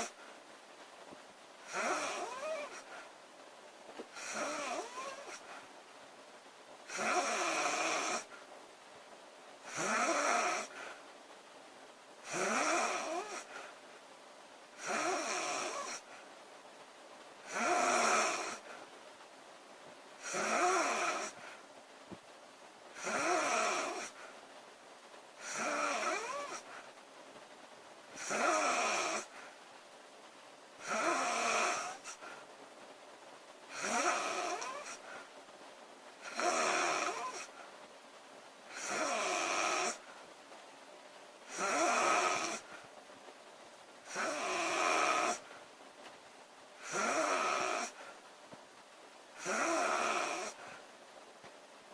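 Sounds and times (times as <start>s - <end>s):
woman snoring: 1.6s - 3.0s, 4.1s - 5.6s, 6.9s - 8.4s, 9.6s - 10.9s, 12.2s - 13.7s, 14.8s - 16.1s, 17.4s - 18.8s, 20.2s - 21.5s, 23.0s - 24.3s, 25.4s - 26.7s, 28.2s - 29.4s, 30.8s - 32.3s, 33.7s - 35.2s, 36.2s - 37.6s, 38.7s - 40.0s, 41.5s - 42.7s, 44.0s - 45.5s, 46.8s - 48.2s, 49.4s - 50.8s.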